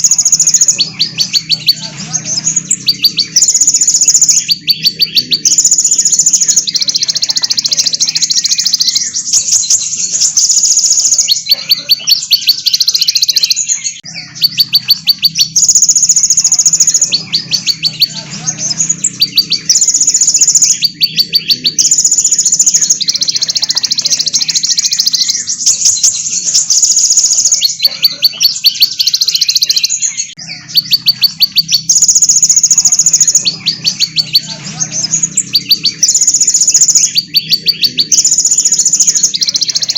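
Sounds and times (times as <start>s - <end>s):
small songbirds trilling: 0.0s - 39.9s.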